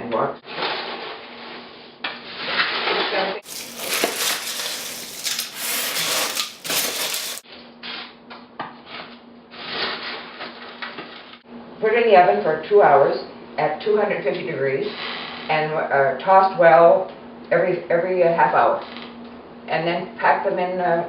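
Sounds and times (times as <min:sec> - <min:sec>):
snack mix rustling and crunching: 0:03.4 - 0:07.4.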